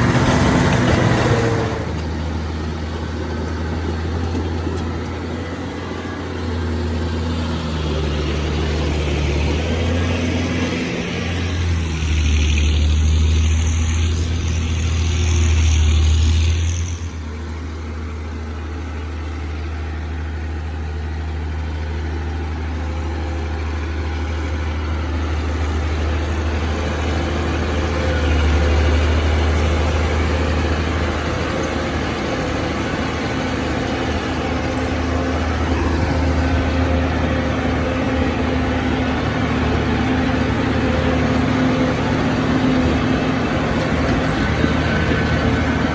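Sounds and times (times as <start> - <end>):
heavy diesel engines droning: 0.0 - 45.9.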